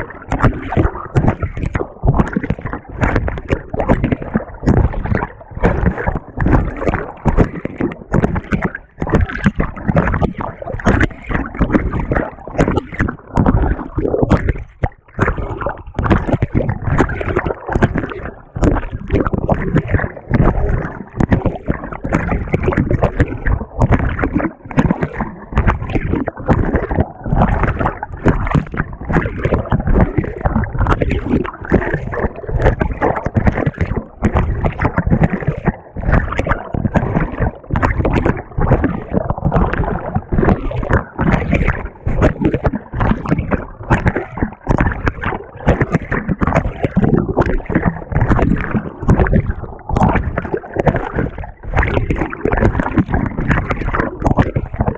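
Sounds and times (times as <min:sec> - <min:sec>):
washing machine water sloshing: 0:00.0 - 0:47.5.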